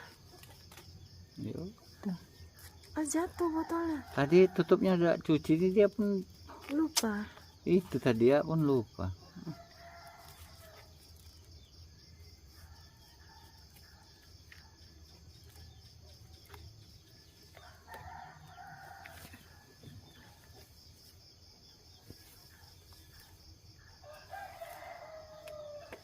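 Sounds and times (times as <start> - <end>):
rooster crowing: 9.3 - 11.0, 17.6 - 20.3, 23.9 - 26.0.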